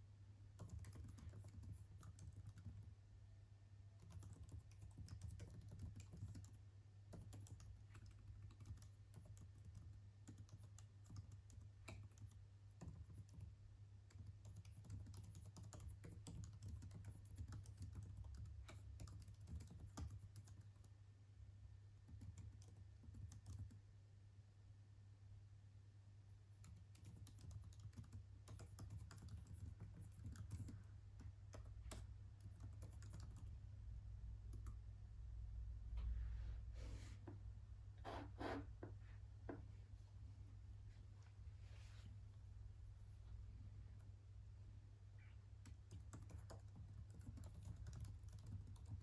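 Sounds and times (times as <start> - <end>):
low steady hum: 0.0 - 49.0
keyboard typing: 0.6 - 2.9, 4.0 - 20.9, 22.1 - 23.8, 26.6 - 33.5, 45.6 - 49.0.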